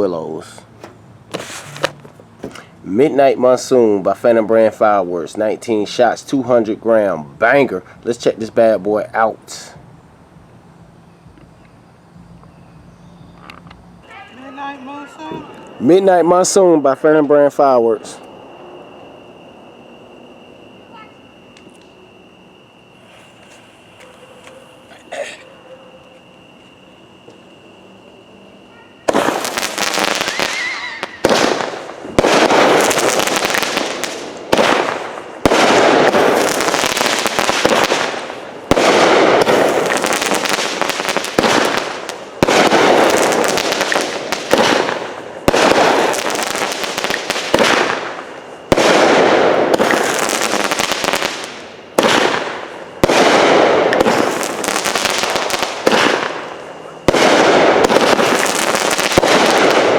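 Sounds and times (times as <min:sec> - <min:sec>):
firework bangs: 0:00.8 - 0:03.6, 0:29.0 - 0:59.9
firework crackling: 0:01.3 - 0:06.6, 0:29.0 - 0:59.9.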